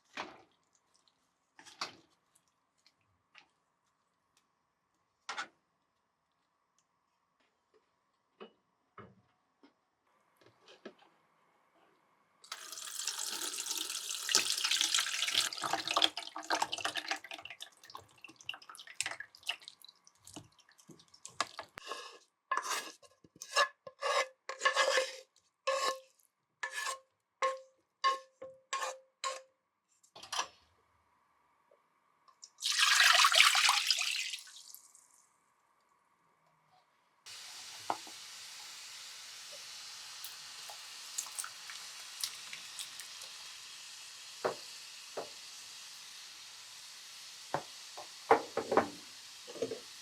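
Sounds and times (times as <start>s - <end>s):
tap running into sink: 44.4s - 45.4s, 47.5s - 49.8s.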